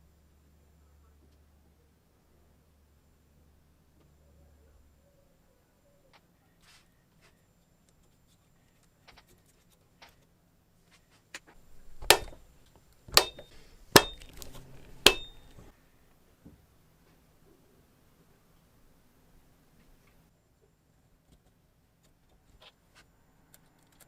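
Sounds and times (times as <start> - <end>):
sharp metallic taps ringing: 11.9 - 12.4, 13.1 - 14.3, 15.0 - 15.7.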